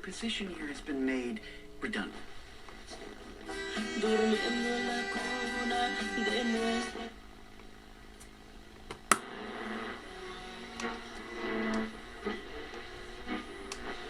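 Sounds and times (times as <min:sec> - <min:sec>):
radio static hiss and crackle: 0:00.0 - 0:04.6, 0:05.6 - 0:14.0
faint radio broadcast snatches: 0:09.1 - 0:14.0
radio dial clicks: 0:10.6 - 0:14.0.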